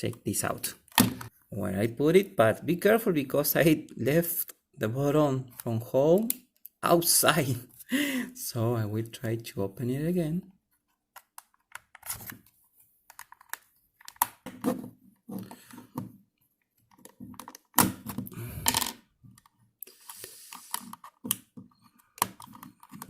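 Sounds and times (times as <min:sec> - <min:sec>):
plastic shell clicks and scrapes: 0:16.8 - 0:23.0.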